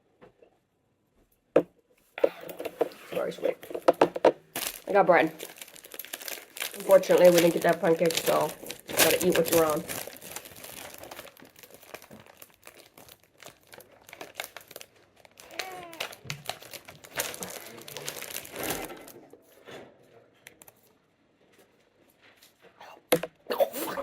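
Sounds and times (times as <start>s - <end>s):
plastic wrapper crinkling: 2.5s - 19.2s.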